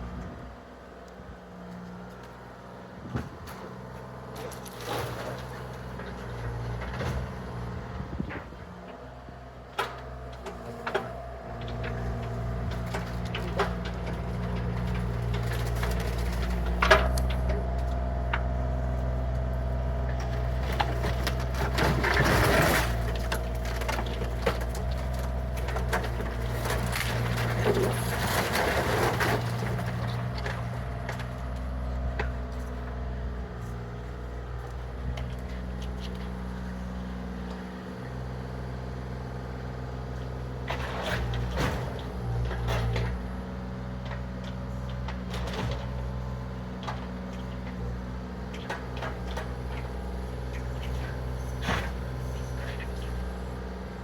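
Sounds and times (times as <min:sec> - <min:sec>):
excavator diesel engine running: 0:00.0 - 0:54.0
wood and debris cracking: 0:10.9 - 0:33.2.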